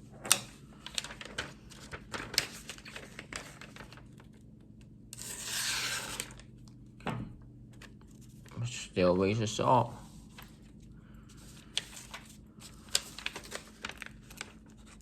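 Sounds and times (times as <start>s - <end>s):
paper rustling: 0.3s - 4.4s, 7.7s - 8.6s, 10.0s - 15.0s
knife slicing through paper: 5.2s - 6.4s.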